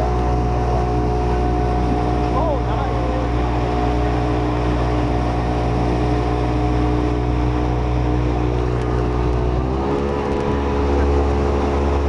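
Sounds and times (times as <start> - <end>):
jet ski engine running: 0.0 - 12.0
rushing water noise: 0.0 - 12.0.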